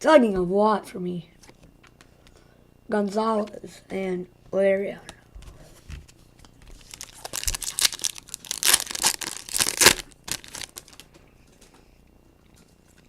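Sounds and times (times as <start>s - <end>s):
foil wrapper crinkling: 6.7s - 11.1s.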